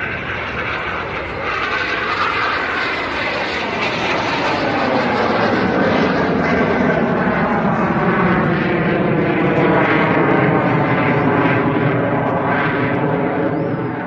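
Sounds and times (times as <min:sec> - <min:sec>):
aircraft flying past: 0:00.0 - 0:14.0.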